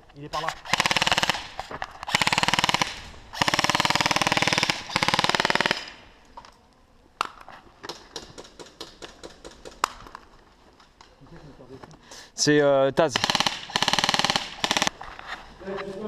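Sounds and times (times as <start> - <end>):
sharp cracks: 0.3 - 6.6, 7.2 - 10.3, 13.0 - 15.0
airsoft guns firing full-auto: 0.4 - 6.1, 13.1 - 14.9.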